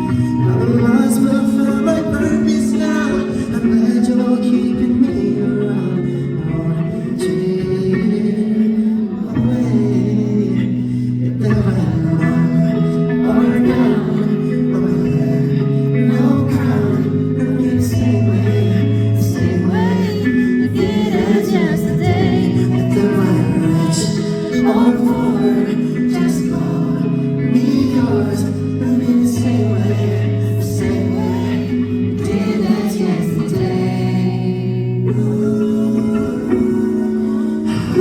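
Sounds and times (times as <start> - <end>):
people singing: 0.0 - 38.0
band playing: 11.5 - 38.0.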